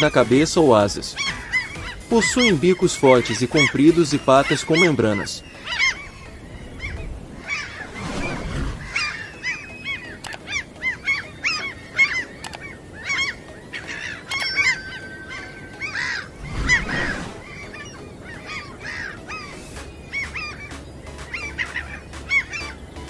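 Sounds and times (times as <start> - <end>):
gulls calling: 0.0 - 23.0
low rushing noise: 16.3 - 18.2.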